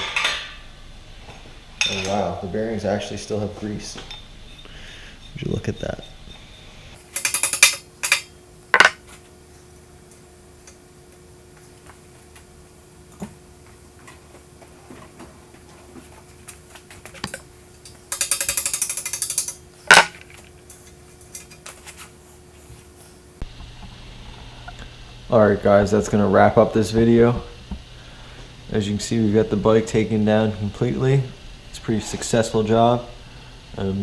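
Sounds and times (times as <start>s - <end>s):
rapid metallic ticking: 7.0s - 8.3s, 17.8s - 19.6s
metal tools clicking: 7.0s - 9.0s, 17.1s - 22.1s
sharp metal clank: 7.0s - 9.0s, 17.9s - 21.5s.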